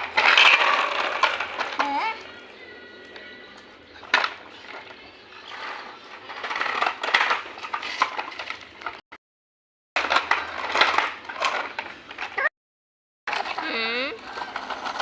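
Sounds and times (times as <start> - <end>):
small hard objects clinking: 0.0 - 2.4.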